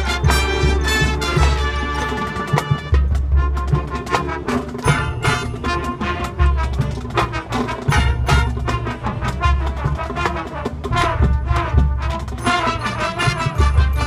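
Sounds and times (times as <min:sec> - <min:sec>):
marching band playing: 0:00.0 - 0:14.0.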